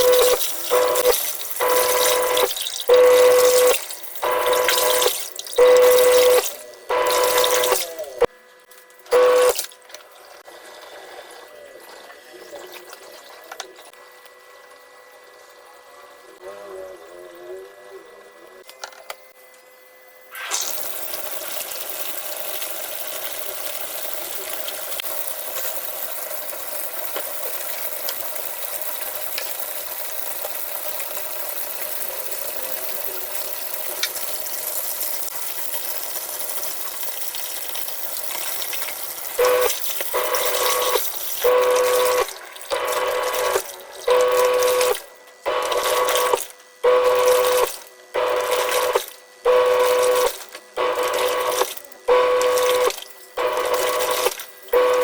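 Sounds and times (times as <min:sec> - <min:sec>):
water running into tub: 0:00.0 - 0:08.2, 0:20.4 - 0:55.0
washing machine motor humming: 0:00.0 - 0:18.6, 0:20.2 - 0:55.0.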